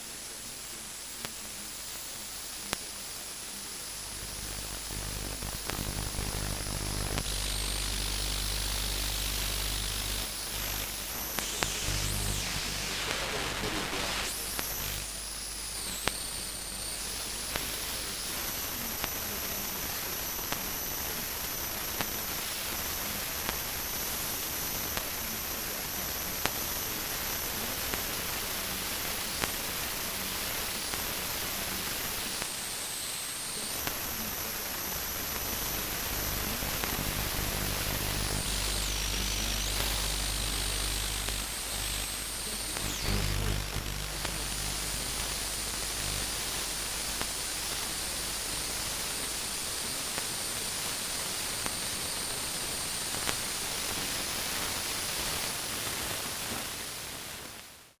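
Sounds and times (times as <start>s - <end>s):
radio static hiss: 0.0s - 58.0s
crackling clicks: 4.4s - 17.8s, 35.3s - 48.8s
low hum: 35.9s - 46.4s.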